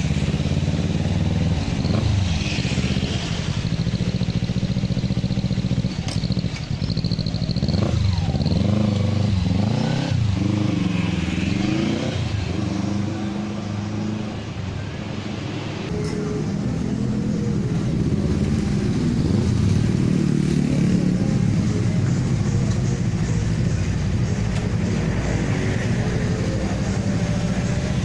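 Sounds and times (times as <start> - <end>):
motorcycle engine revving: 0.0 - 14.6.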